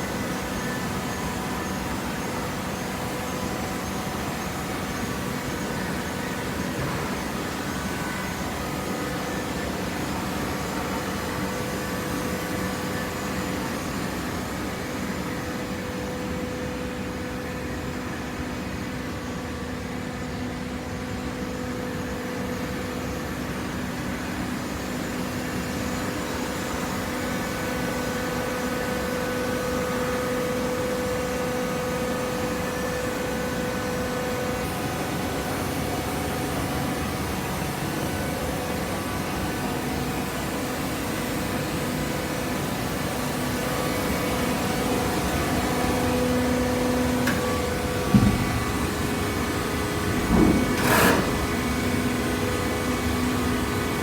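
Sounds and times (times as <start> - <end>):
baling press machine hum: 22.3 - 54.0.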